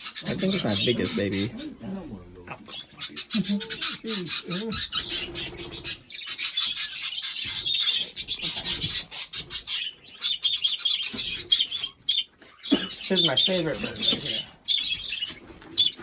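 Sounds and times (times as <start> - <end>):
budgerigars chattering: 0.0 - 16.0
person's voice: 0.2 - 4.8, 13.1 - 14.5.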